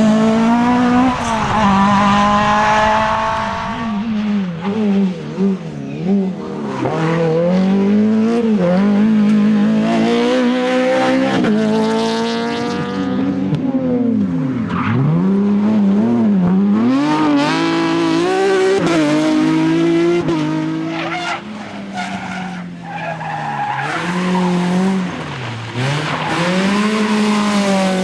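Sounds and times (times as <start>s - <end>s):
rally car engine revving: 0.0s - 28.0s.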